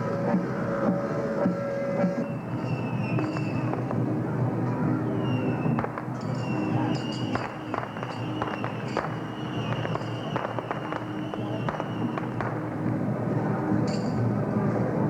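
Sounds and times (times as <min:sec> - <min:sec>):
loud procession music: 0:00.0 - 0:15.0
firecrackers cracking: 0:05.7 - 0:13.4.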